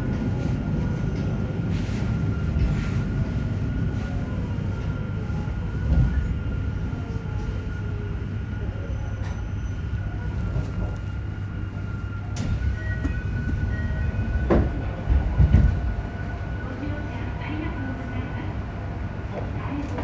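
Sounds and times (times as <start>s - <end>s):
train wheels and motor rumbling: 0.0s - 20.0s
train thump: 12.4s - 16.3s.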